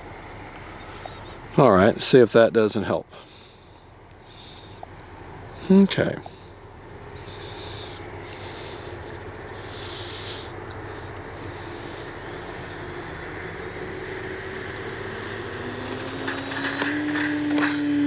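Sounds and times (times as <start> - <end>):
rc plane electric motor whining: 9.9 - 18.0.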